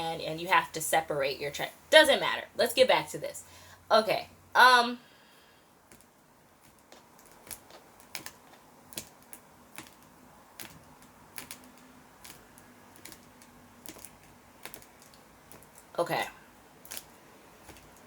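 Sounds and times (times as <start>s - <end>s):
faint sharp clicks and taps: 5.9s - 15.9s, 16.8s - 18.0s.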